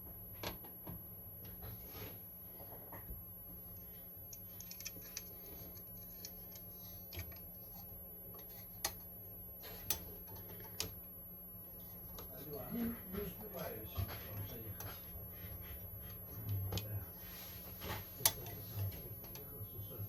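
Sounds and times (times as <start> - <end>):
faint clicks of small parts: 4.3 - 7.5, 17.8 - 19.5.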